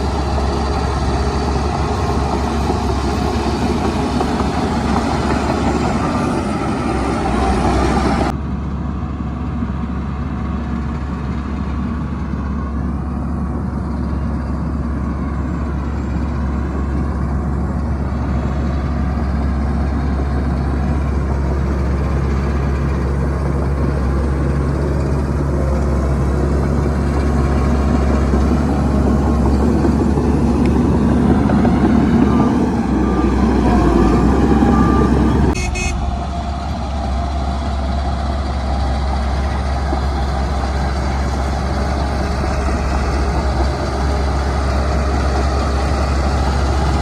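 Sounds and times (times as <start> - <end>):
heavy diesel engine running: 0.0 - 47.0
higher-pitched machine noise: 31.5 - 39.0.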